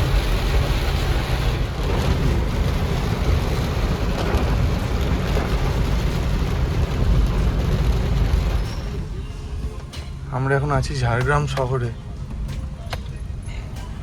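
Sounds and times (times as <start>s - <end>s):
rain pattering on car: 0.0s - 13.2s
road and engine rumble: 0.0s - 14.0s.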